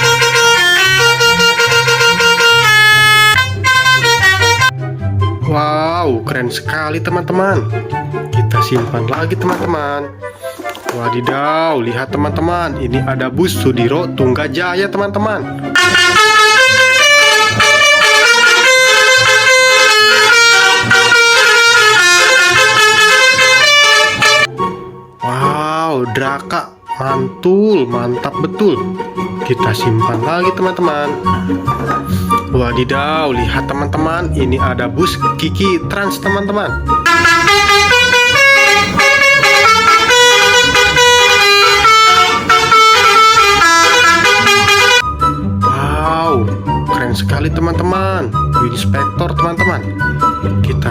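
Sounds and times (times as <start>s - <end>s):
multi-tone bus horn tune: 0.0s - 4.8s, 15.7s - 24.5s, 37.0s - 45.0s
low beat: 15.8s - 24.5s, 37.1s - 45.0s.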